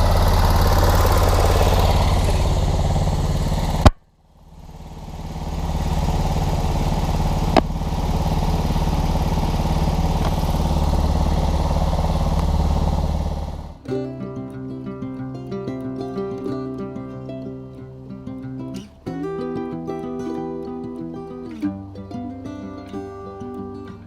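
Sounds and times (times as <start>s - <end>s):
small engine running: 0.0s - 24.0s
guitar music: 5.4s - 24.0s.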